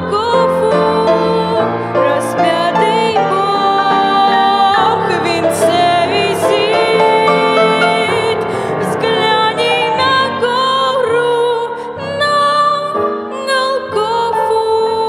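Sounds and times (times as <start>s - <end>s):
voices singing a hymn: 0.0s - 11.3s
instrumental accompaniment: 0.2s - 11.6s.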